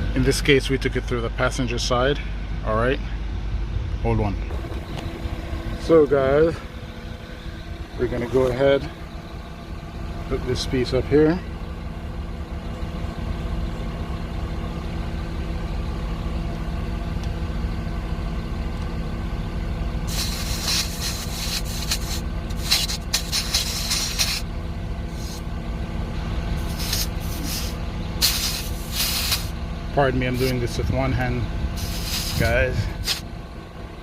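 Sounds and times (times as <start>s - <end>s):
compressor motor hum: 0.0s - 34.0s
air hissing at tire valve: 20.0s - 25.6s, 26.5s - 29.6s, 30.4s - 30.7s, 31.7s - 33.4s.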